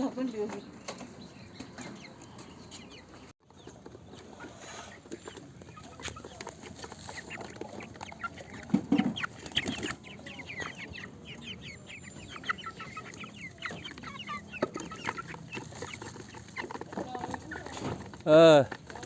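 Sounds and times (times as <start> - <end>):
chicks peeping: 0.0 - 19.0.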